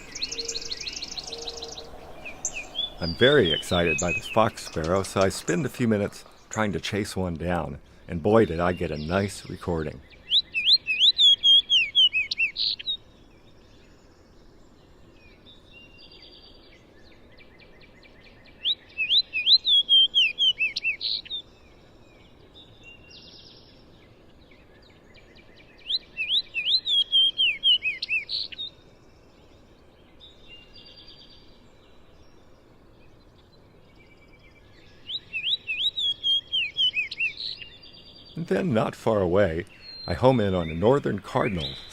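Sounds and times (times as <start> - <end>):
sparrow singing slurred whistles: 0.0 - 6.4, 10.2 - 13.0, 18.1 - 21.4, 25.8 - 28.7, 34.7 - 38.7, 39.6 - 41.9
faint bird notes: 0.0 - 12.0, 30.4 - 41.9.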